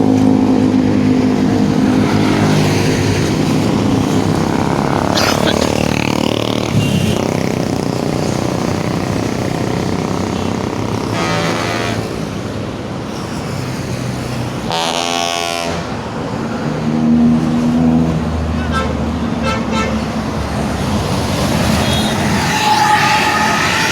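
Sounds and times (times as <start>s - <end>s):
highway traffic passing: 0.0s - 23.9s
horn blasts: 6.6s - 7.5s, 10.2s - 12.2s, 14.7s - 16.0s, 21.6s - 23.9s.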